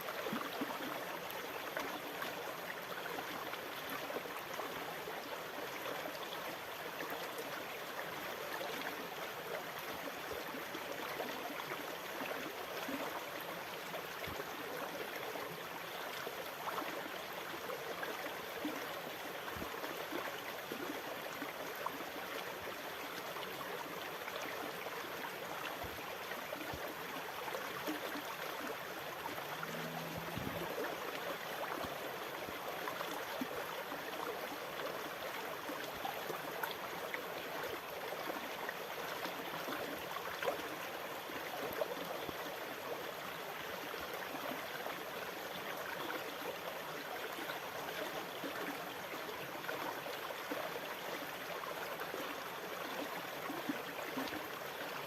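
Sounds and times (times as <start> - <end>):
brief low hum: 29.5 - 30.9.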